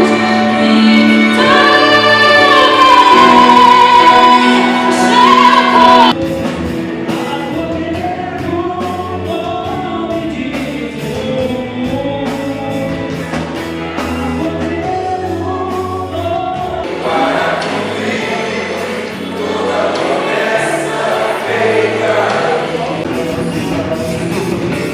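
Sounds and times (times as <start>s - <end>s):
gospel band with singing: 0.0s - 24.9s
steady drum beat: 5.4s - 16.9s, 23.0s - 24.9s.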